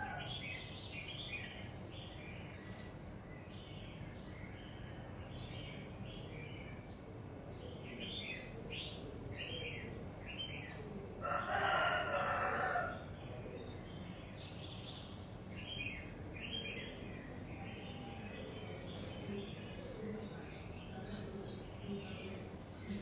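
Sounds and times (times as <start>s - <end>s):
rooster crowing: 0.0s - 0.4s, 11.2s - 13.1s
small birds chirping: 0.0s - 23.0s.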